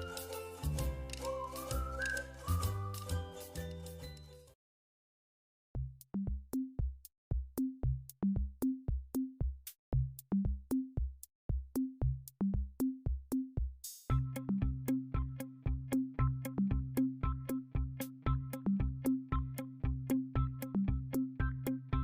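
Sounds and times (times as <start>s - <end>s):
electronic drum machine beat: 5.8s - 14.1s.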